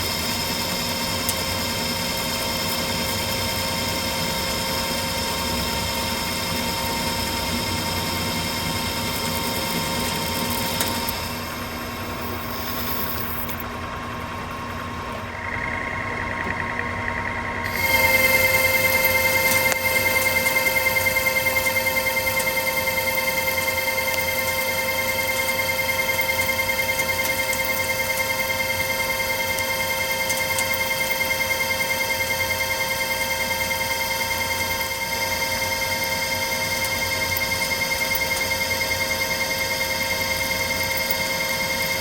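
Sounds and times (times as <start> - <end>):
metal lathe whining: 0.0 - 13.7, 15.3 - 42.0
cutting tool hissing: 17.6 - 29.9.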